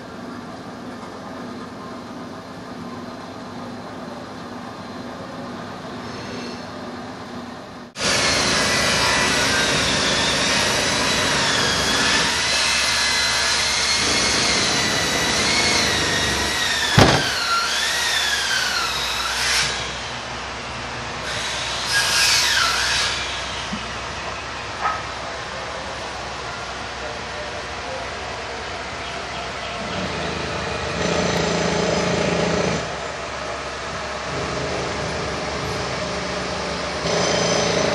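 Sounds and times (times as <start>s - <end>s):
power saw cutting: 8.0s - 25.0s, 29.8s - 33.0s, 34.2s - 37.9s
sharp knock: 17.0s - 17.4s.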